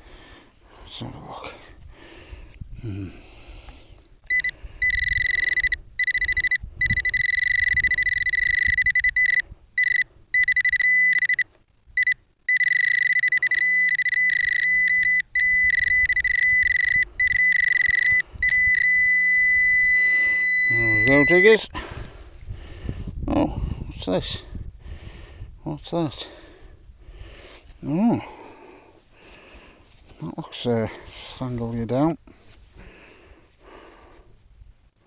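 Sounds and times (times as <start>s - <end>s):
pinpointer high electronic tone: 4.3s - 21.6s.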